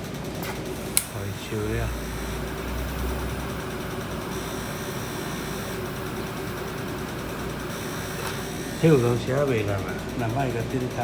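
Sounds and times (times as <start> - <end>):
machinery hum and hiss: 0.0 - 11.0.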